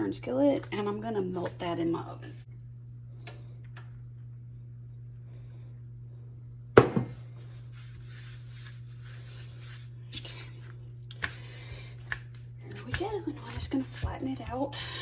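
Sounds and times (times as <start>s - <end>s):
steady low hum: 0.0s - 15.0s
soft rubbing: 7.4s - 10.0s, 12.4s - 14.8s.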